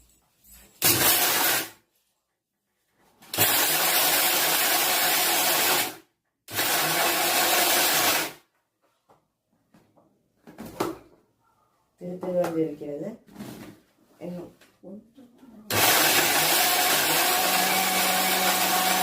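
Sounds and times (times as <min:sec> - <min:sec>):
electric mixer grinder grinding: 0:00.8 - 0:01.7, 0:03.4 - 0:08.4, 0:15.7 - 0:19.0.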